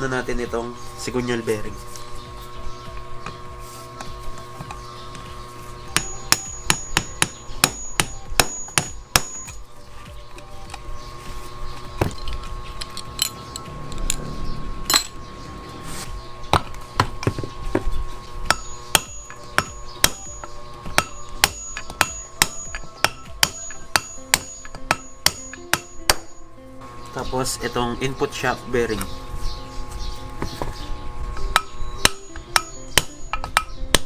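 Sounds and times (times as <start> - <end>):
hammer striking metal: 5.9 - 9.6, 13.1 - 15.3, 18.4 - 26.4, 31.5 - 34.0.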